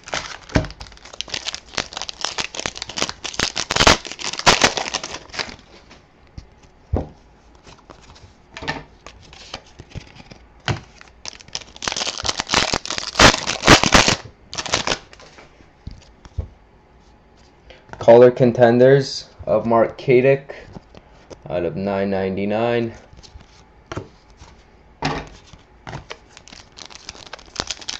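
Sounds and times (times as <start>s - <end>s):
card pack wrapper crinkling: 0.0s - 5.8s, 7.6s - 8.2s, 9.0s - 15.3s, 25.4s - 27.9s.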